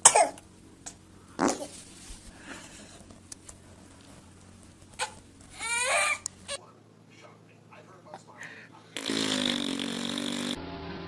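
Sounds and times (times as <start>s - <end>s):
fart: 1.4s - 1.7s, 9.0s - 10.6s.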